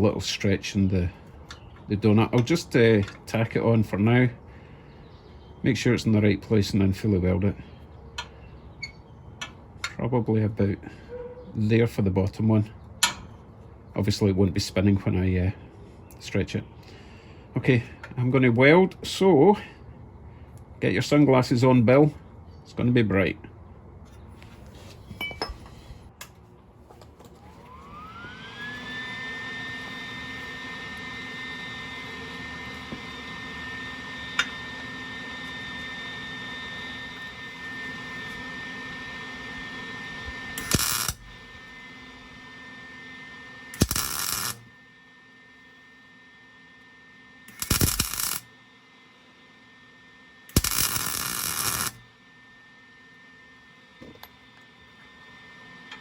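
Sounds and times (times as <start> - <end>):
high machine whine: 27.2 - 56.0
crackling welding bursts: 40.6 - 41.5, 43.7 - 44.7, 47.5 - 48.5, 50.5 - 52.0.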